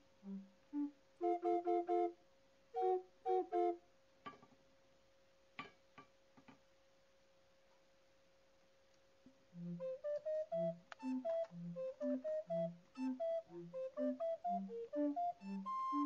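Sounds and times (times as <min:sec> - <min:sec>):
faint steady hum: 0:00.0 - 0:16.0
bright flute-like notes: 0:00.3 - 0:02.2, 0:02.8 - 0:03.8, 0:09.6 - 0:16.0
faint clicks: 0:08.8 - 0:13.0.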